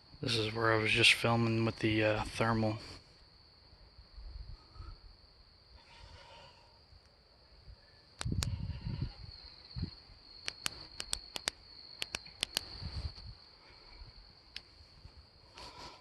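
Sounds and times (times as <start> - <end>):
night insects singing: 0.0 - 16.0
sharp clicks: 8.2 - 8.6, 10.4 - 12.7.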